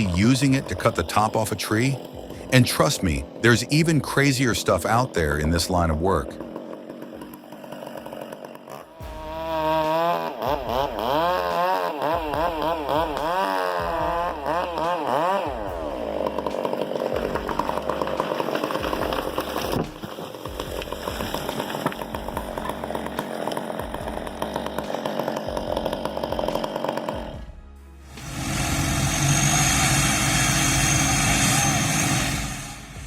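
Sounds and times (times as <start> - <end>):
chainsaw cutting wood: 0.0 - 33.0
engine running: 0.0 - 33.0
music with pulsing bass beat: 9.0 - 11.6, 12.2 - 29.2.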